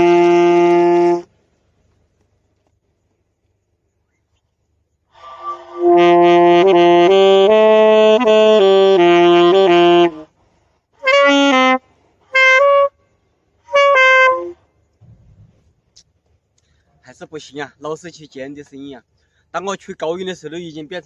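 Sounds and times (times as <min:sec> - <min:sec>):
reed wind instrument notes: 0:00.0 - 0:01.3, 0:05.1 - 0:10.4, 0:11.0 - 0:14.6.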